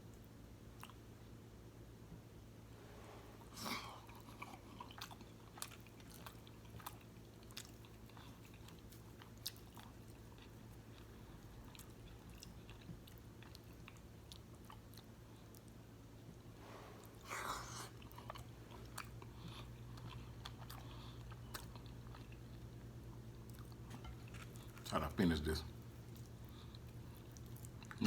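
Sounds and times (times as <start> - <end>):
person chewing with wet clicks: 0.0 - 1.4, 3.8 - 16.3, 17.6 - 28.0
steady low hum: 0.0 - 28.0.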